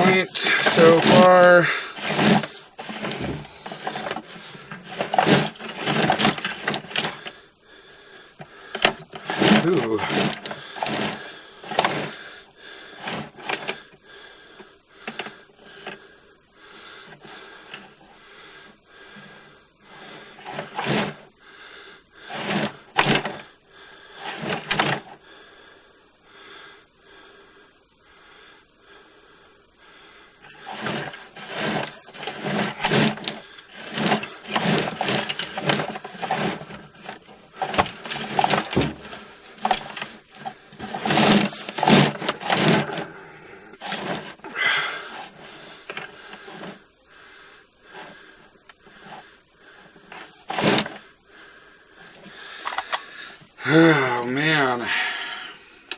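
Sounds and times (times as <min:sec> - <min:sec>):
push cable rattling and knocking: 0:00.0 - 0:07.3, 0:08.4 - 0:12.2, 0:20.4 - 0:21.2, 0:22.3 - 0:23.4, 0:24.3 - 0:25.1, 0:30.5 - 0:43.1, 0:43.8 - 0:44.6, 0:50.0 - 0:51.0.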